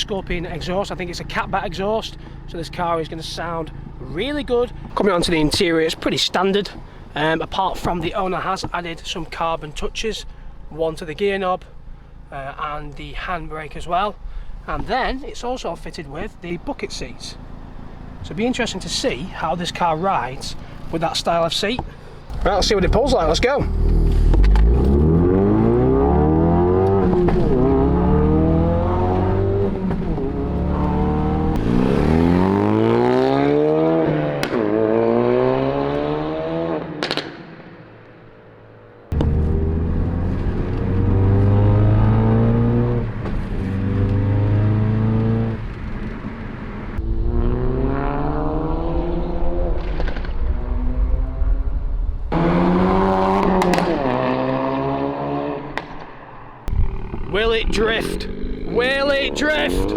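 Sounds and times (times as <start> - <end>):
car engine accelerating through gears: 22.0 - 37.5, 39.1 - 59.9.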